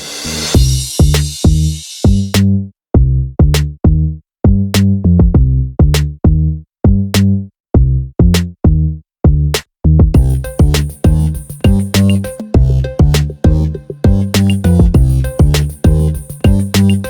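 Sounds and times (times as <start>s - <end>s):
drum machine beat: 0.0s - 2.4s, 3.0s - 7.1s, 7.8s - 17.0s
punchy bass notes: 0.2s - 17.0s
electronic music: 10.2s - 17.0s.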